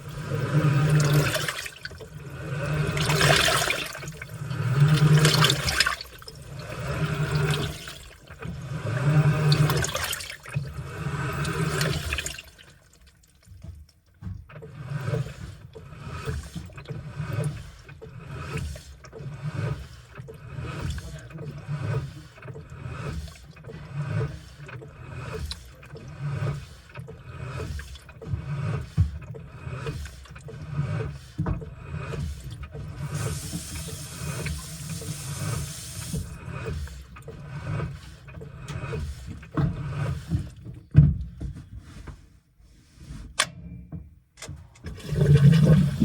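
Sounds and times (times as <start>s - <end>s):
washing machine clicks: 0.0s - 19.2s, 43.3s - 46.0s
washing machine sloshing: 0.0s - 46.0s.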